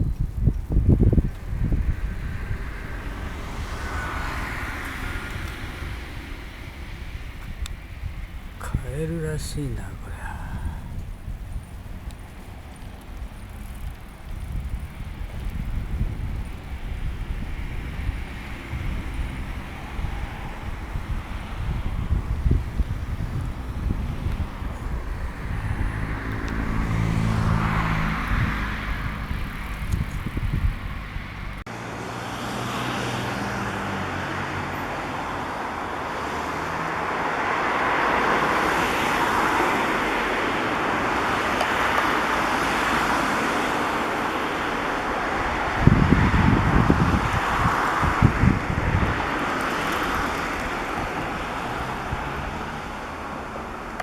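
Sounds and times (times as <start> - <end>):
vehicle engine hum: 0.0 - 32.5
hiss of passing traffic: 0.0 - 54.0
wind: 0.0 - 54.0.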